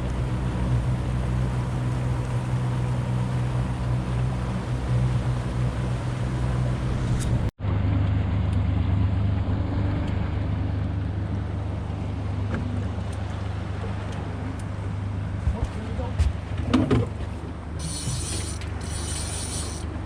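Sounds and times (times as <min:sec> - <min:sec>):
water noise: 0:00.0 - 0:07.5, 0:08.9 - 0:20.0
boat motor droning: 0:00.0 - 0:20.0.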